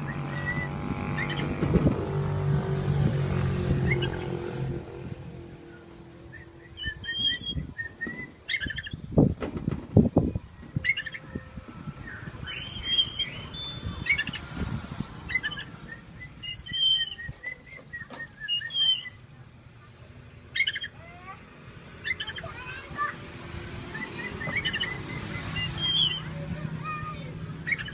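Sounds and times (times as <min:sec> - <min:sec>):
bird chirping: 0:00.0 - 0:01.7, 0:03.8 - 0:04.4, 0:05.6 - 0:09.2, 0:10.0 - 0:19.3, 0:20.5 - 0:21.0, 0:22.0 - 0:22.6, 0:23.9 - 0:26.4, 0:27.6 - 0:27.9
wing flutters or knocks: 0:09.2 - 0:10.0.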